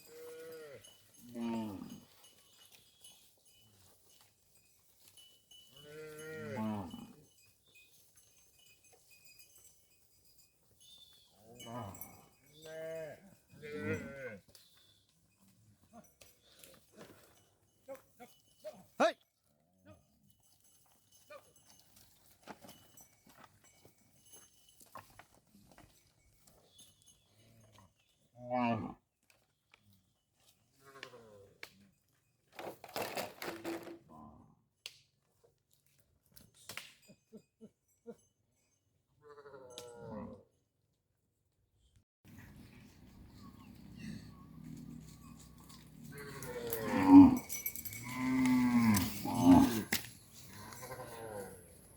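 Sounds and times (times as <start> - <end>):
cattle mooing: 5.8 - 7.1, 11.6 - 14.4, 44.0 - 51.6.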